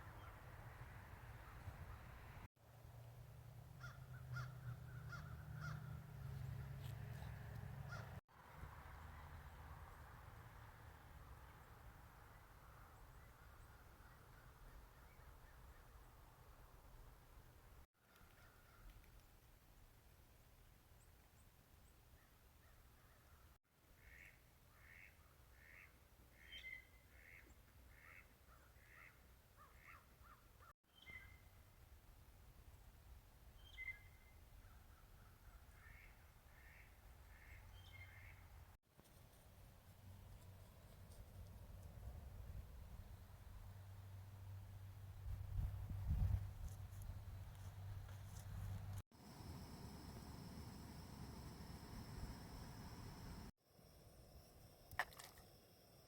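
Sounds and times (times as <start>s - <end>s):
bird calling: 3.8s - 8.2s, 49.2s - 53.5s
faint bird calls: 3.8s - 8.2s, 18.0s - 19.0s, 22.2s - 31.4s, 49.2s - 53.5s
steady low rumble: 49.2s - 53.5s.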